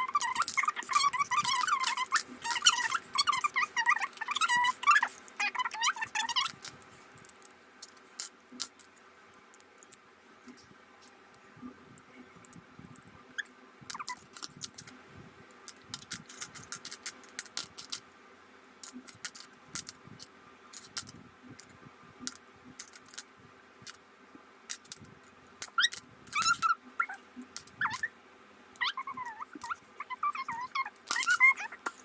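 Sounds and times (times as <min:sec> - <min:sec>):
high squeaky calls: 0:00.0 - 0:06.6, 0:13.4 - 0:14.3, 0:25.7 - 0:28.1, 0:28.8 - 0:32.0
plastic puzzle pieces clicking: 0:00.1 - 0:08.9, 0:15.7 - 0:18.0, 0:18.8 - 0:20.0, 0:20.7 - 0:23.2, 0:24.7 - 0:26.7, 0:29.1 - 0:32.0.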